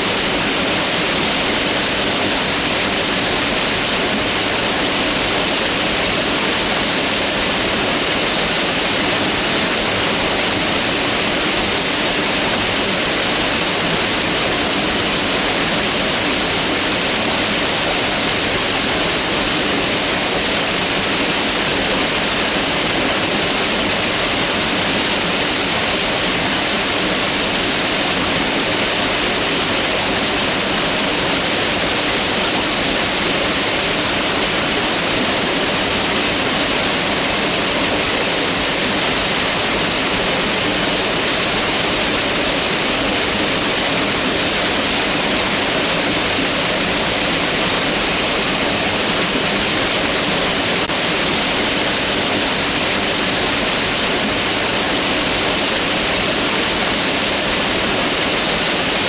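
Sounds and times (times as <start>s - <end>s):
river rushing over rocks: 0.0s - 59.0s.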